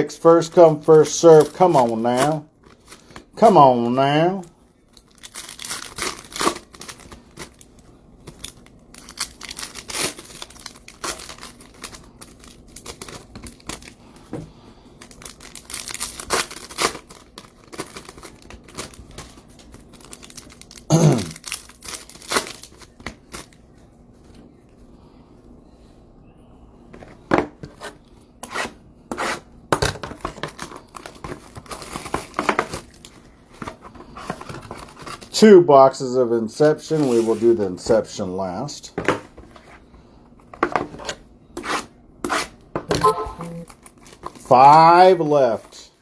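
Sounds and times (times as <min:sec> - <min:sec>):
plastic wrapping crinkling and tearing: 0:04.8 - 0:14.0, 0:15.0 - 0:23.6.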